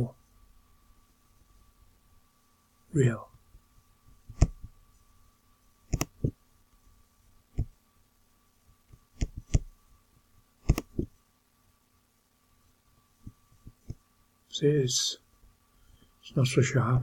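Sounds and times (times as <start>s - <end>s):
faint electrical hum: 0.0s - 17.0s
computer mouse clicking: 4.3s - 4.7s, 5.9s - 6.3s, 9.2s - 9.7s, 10.6s - 11.1s.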